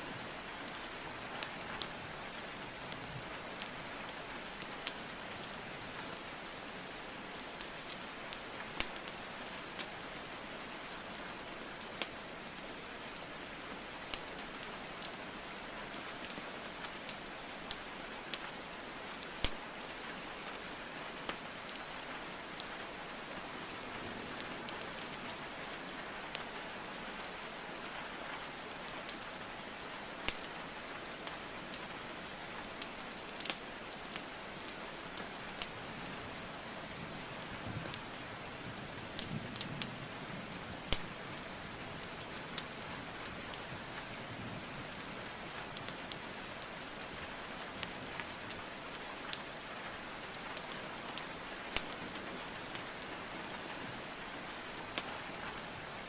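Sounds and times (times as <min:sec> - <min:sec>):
steady rain hiss: 0:00.0 - 0:56.0
logs crackling in fireplace: 0:00.3 - 0:06.4, 0:07.0 - 0:39.7, 0:40.5 - 0:56.0.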